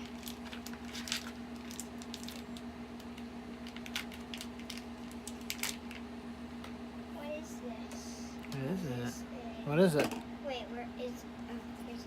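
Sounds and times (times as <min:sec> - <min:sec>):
plastic packaging crinkling: 0:00.0 - 0:06.1
steady low hum: 0:00.0 - 0:12.0.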